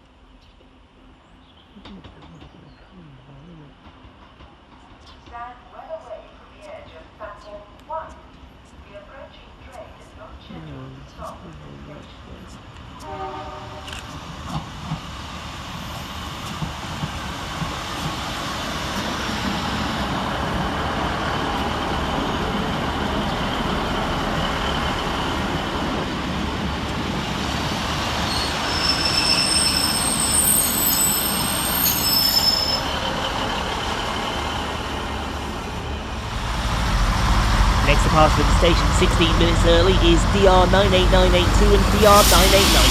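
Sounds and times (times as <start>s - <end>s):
train rumble: 0.0s - 42.9s
high-pitched wheel squeal: 28.3s - 33.2s.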